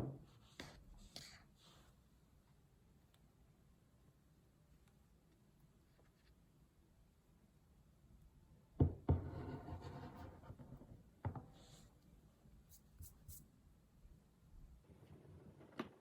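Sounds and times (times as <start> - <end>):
knocks on hard surface: 8.8 - 9.4.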